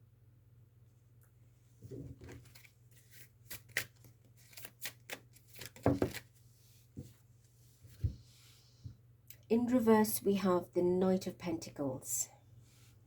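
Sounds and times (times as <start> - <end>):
cards being shuffled: 2.2 - 6.3.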